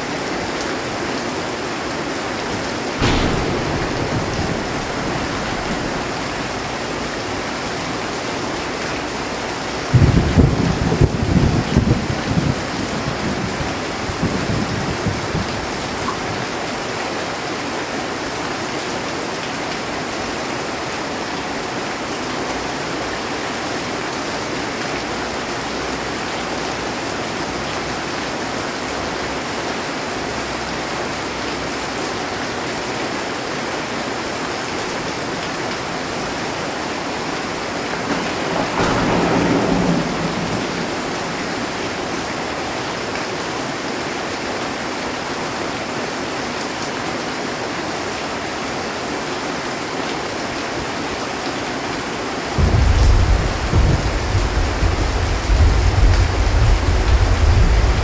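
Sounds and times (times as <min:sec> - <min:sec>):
heavy rain on a metal roof: 0:00.0 - 0:58.0
thunder rumbling: 0:02.2 - 0:16.5, 0:34.9 - 0:43.8, 0:52.5 - 0:58.0.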